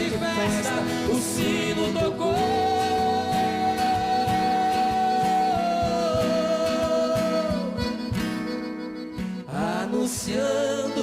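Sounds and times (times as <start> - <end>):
accordion: 0.0 - 11.0
plucked guitar bass and chords: 0.0 - 11.0.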